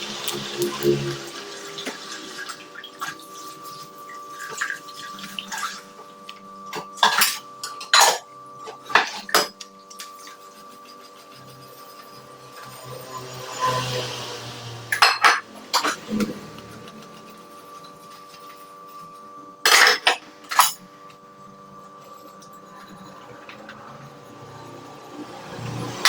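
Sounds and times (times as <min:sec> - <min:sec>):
running water: 0:00.0 - 0:11.4
sharp clatters of dishes: 0:06.7 - 0:10.1, 0:14.9 - 0:16.2, 0:19.6 - 0:20.8
dishes and cutlery clinking: 0:06.7 - 0:12.1, 0:14.9 - 0:16.3, 0:19.6 - 0:20.8.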